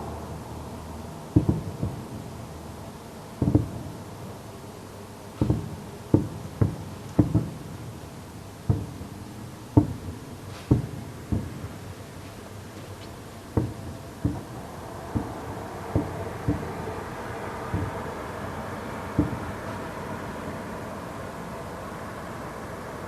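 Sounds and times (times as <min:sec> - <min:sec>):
fireworks booming: 0:01.3 - 0:02.5, 0:03.4 - 0:04.4, 0:05.4 - 0:20.0.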